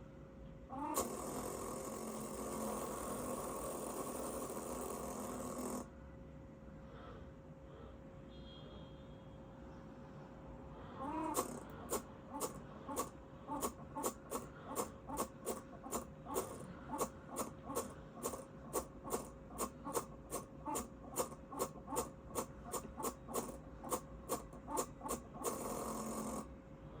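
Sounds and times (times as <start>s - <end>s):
faint steady tone: 1.7s - 11.1s.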